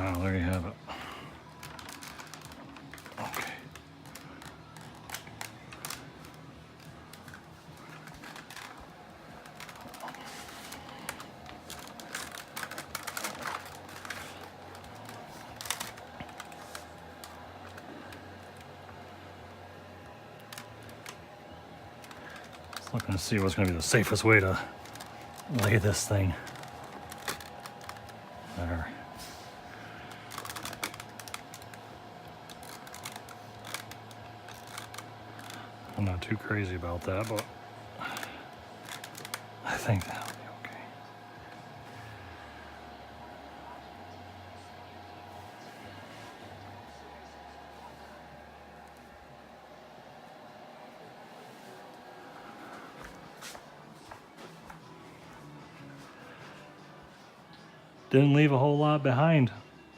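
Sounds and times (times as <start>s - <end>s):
faint steady hum: 0.0s - 59.9s
plastic parts clicking and knocking: 1.6s - 18.7s, 22.0s - 28.3s, 30.1s - 31.8s, 38.2s - 40.8s.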